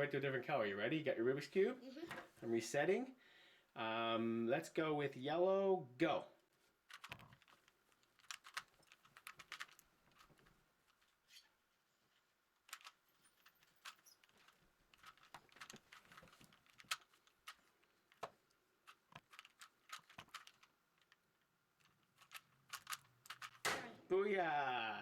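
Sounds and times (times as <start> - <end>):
puzzle cube clicking: 6.9 - 10.3, 12.7 - 13.1, 15.0 - 21.2, 21.8 - 23.9.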